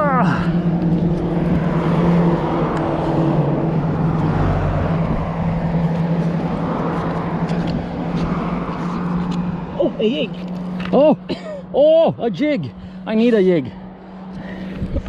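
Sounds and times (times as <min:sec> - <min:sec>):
road traffic hum: 0:00.0 - 0:15.0
vehicle passing by: 0:00.0 - 0:15.0.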